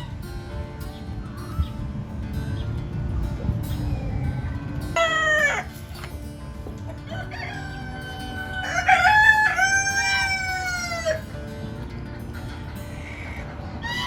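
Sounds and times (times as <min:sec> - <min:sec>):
rooster crowing: 0:07.1 - 0:11.2.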